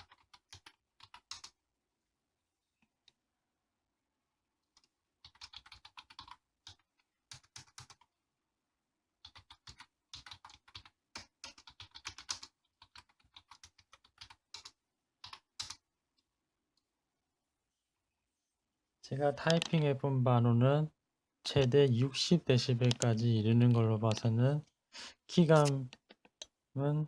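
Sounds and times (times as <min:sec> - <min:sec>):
keyboard typing: 0:00.0 - 0:01.6, 0:04.7 - 0:08.1, 0:09.2 - 0:15.9, 0:19.4 - 0:19.8, 0:22.7 - 0:24.4.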